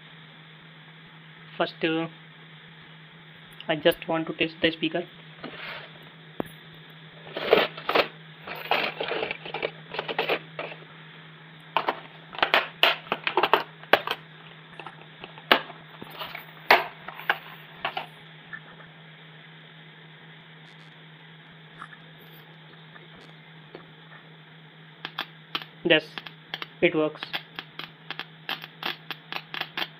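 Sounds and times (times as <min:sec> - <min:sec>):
low hum: 0:00.0 - 0:26.8
loudspeaker crackles and pops: 0:20.6 - 0:21.1, 0:21.7 - 0:23.9, 0:25.0 - 0:29.9.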